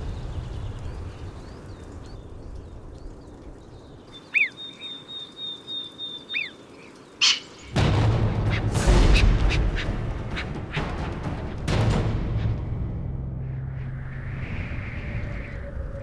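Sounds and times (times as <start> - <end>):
low rumble: 7.8 - 16.0.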